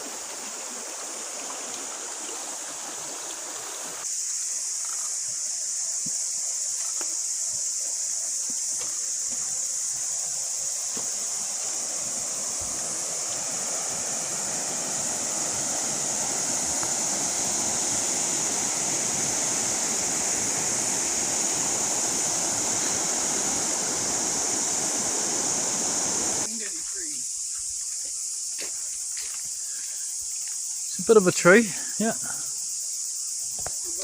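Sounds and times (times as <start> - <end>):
stream rushing: 0.0 - 4.2, 6.3 - 26.8
high-pitched hiss: 0.0 - 34.0.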